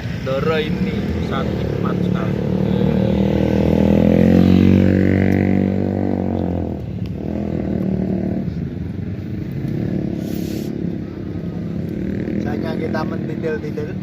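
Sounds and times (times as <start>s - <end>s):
rumble of passing vehicles: 0.0s - 14.0s
motorcycle engine passing: 0.4s - 14.0s.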